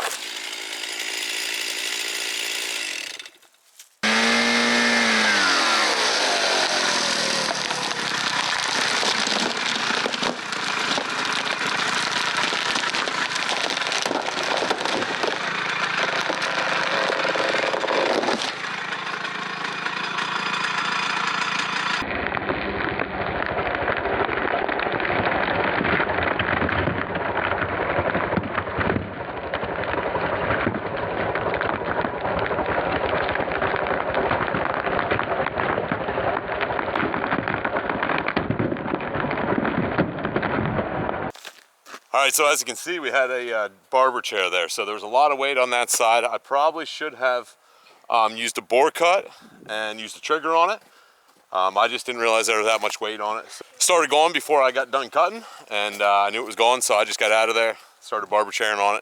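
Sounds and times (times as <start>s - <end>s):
chainsaw engine slowing down: 0.0s - 28.2s
dense crackling rushing noise: 7.4s - 19.9s, 21.9s - 41.4s.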